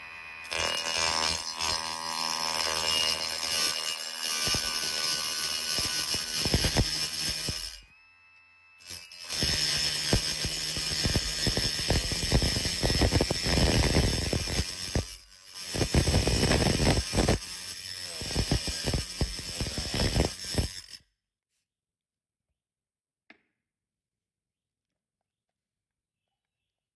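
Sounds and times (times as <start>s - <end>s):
power tool grinding tile: 0.0s - 21.0s.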